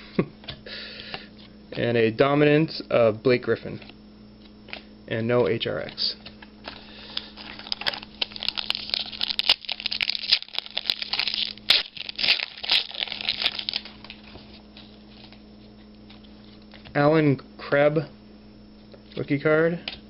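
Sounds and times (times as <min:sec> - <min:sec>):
wrapper tearing and crinkling: 0:07.2 - 0:14.4.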